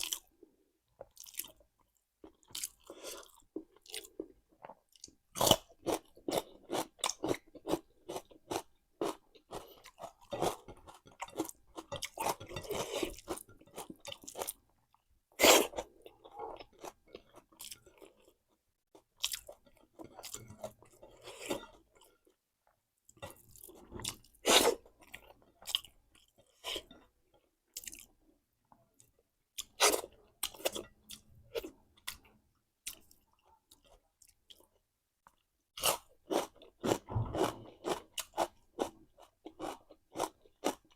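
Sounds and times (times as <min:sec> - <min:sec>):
person chewing and crunching food: 0:00.0 - 0:40.9.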